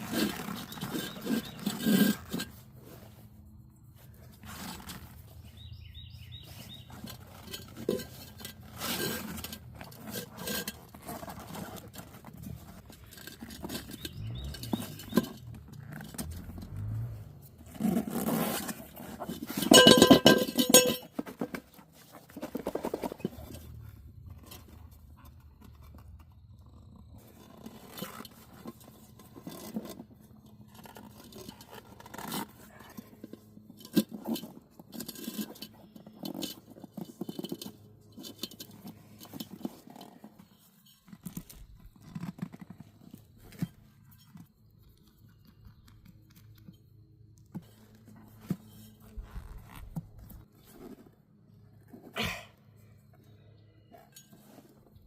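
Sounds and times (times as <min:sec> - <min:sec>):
tools scraping on tyre: 0:00.0 - 0:55.0.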